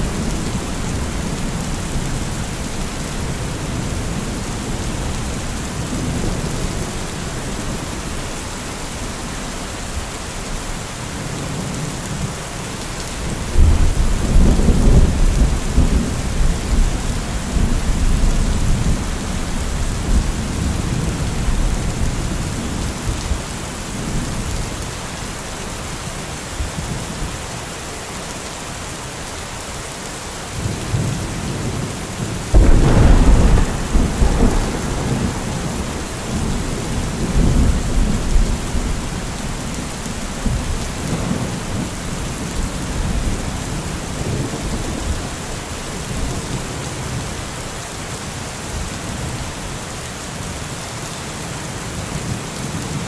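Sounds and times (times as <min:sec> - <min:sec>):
steady rain: 0:00.0 - 0:53.0
loud thunderclap: 0:32.5 - 0:38.9
thunder rumbling: 0:32.5 - 0:45.4.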